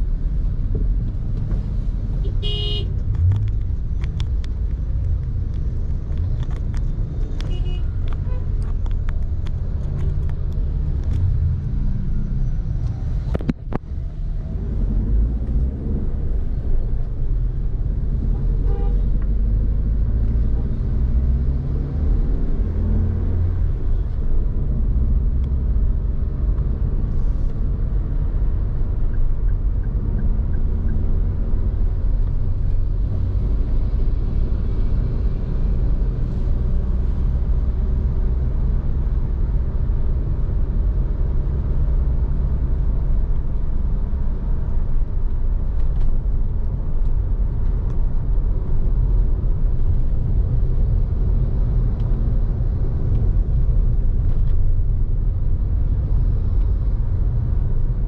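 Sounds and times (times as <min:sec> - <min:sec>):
engine and road rumble: 0:00.0 - 0:58.0.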